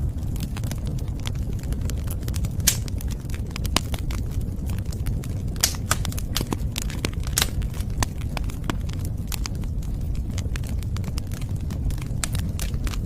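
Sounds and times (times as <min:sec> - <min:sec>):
wood fire crackling: 0:00.0 - 0:13.0.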